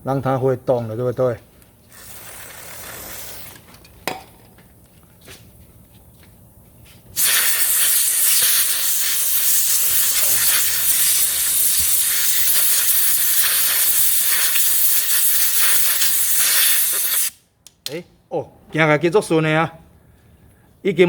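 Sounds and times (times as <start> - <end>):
pressurised jet hissing: 1.9 - 3.6, 7.2 - 17.3.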